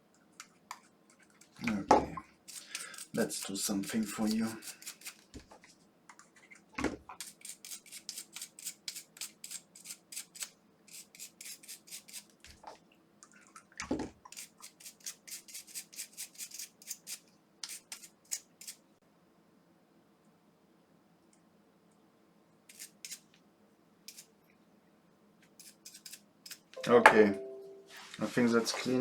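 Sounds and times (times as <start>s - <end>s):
small brush scrubbing: 2.5s - 6.6s, 7.2s - 12.3s, 14.3s - 18.8s, 22.7s - 23.3s, 24.1s - 24.3s, 25.6s - 26.7s.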